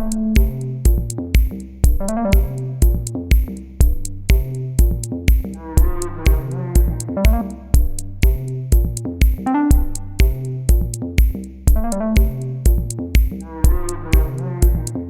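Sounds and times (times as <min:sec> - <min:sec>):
electronic music: 0:00.0 - 0:15.0
hi-hat ticks: 0:00.0 - 0:15.0
kick drum beat: 0:00.0 - 0:15.0
synthesizer notes: 0:02.0 - 0:03.1, 0:05.6 - 0:08.9, 0:09.5 - 0:10.5, 0:11.7 - 0:15.0.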